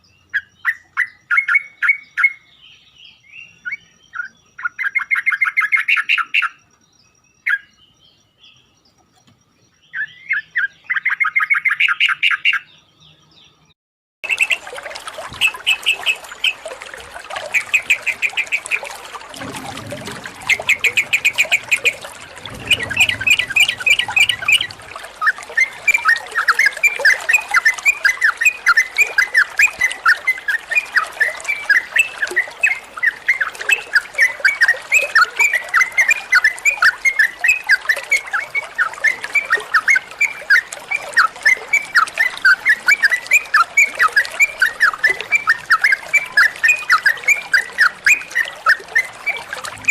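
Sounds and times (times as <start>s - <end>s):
bird singing: 0.0s - 14.6s, 17.4s - 49.9s
low rumble: 19.4s - 26.4s.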